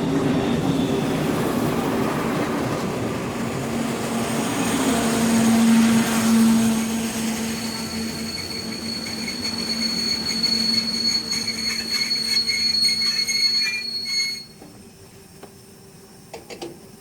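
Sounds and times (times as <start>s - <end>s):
train squealing: 4.1s - 14.8s.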